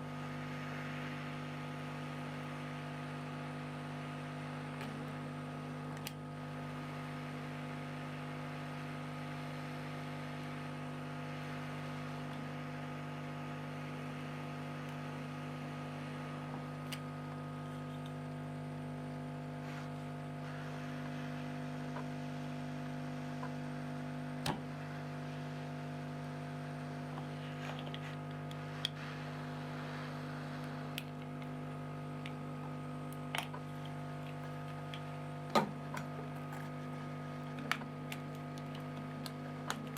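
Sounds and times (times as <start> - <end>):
electrical hum: 0.0 - 39.9.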